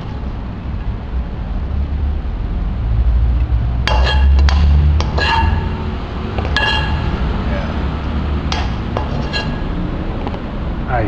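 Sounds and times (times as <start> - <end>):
low rumble: 0.0 - 9.0
utensil clinking against dishware: 3.9 - 5.8, 6.4 - 7.8, 8.5 - 9.7.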